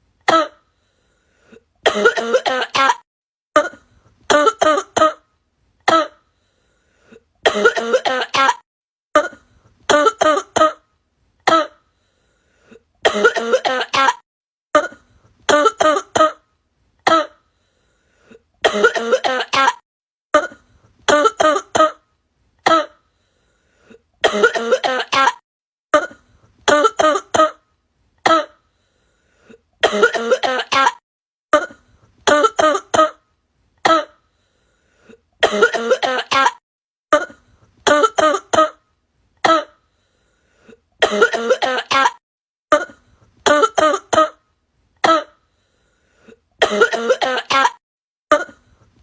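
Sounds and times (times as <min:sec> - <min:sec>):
man coughing: 0:01.9 - 0:03.0, 0:07.5 - 0:08.6, 0:13.1 - 0:14.2, 0:18.7 - 0:19.8, 0:24.2 - 0:25.4, 0:29.8 - 0:31.0, 0:35.4 - 0:36.6, 0:41.0 - 0:42.2, 0:46.6 - 0:48.6
man coughing hoarsely: 0:35.4 - 0:36.6.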